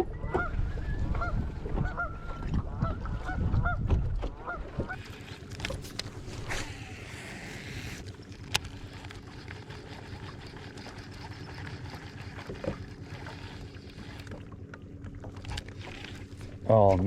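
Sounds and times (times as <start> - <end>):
low rumbling noise: 0.0 - 9.8
electric motor humming: 5.0 - 16.7.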